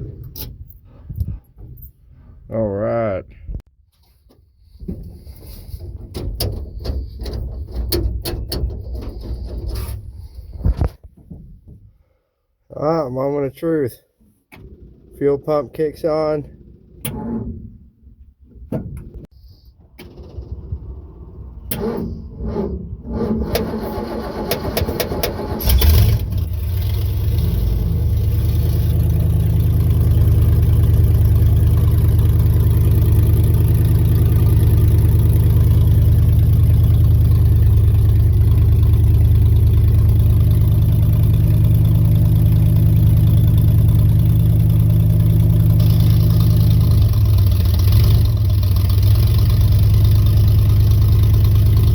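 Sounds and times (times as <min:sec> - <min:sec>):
engine cranking and starting: 0:19.5 - 0:42.2
engine running steadily: 0:20.4 - 0:51.9.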